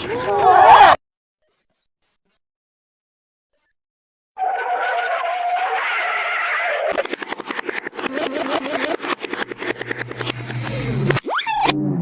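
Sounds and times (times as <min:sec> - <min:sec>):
fast rattling clatter of clicks: 0:06.9 - 0:10.7.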